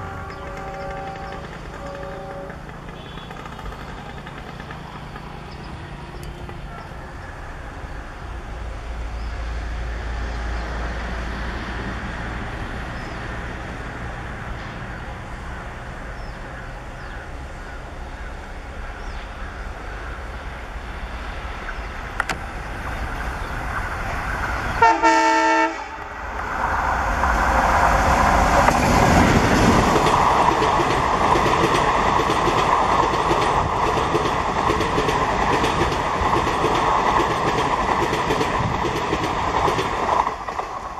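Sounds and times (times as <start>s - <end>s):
locomotive horn blast: 0.0s - 3.6s, 24.8s - 26.2s
diesel train rumbling past: 0.0s - 40.9s.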